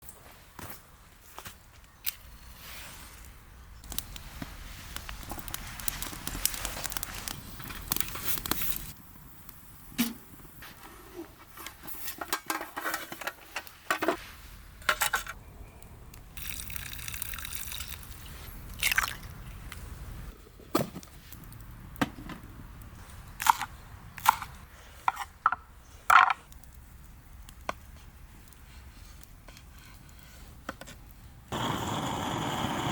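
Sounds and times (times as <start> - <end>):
liquid pouring: 16.4 - 18.2, 18.8 - 19.3.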